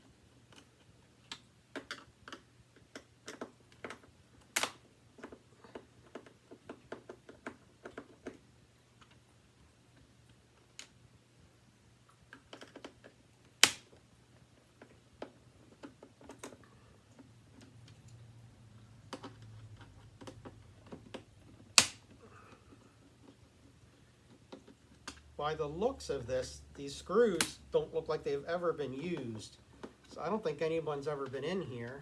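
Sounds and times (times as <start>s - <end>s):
hard plastic parts clicking: 27.2s - 27.6s.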